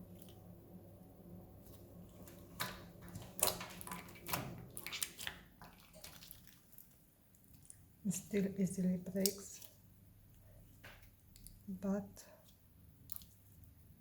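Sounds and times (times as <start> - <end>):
slime squelching and snapping: 2.2 - 7.8, 11.0 - 11.7, 13.0 - 13.7.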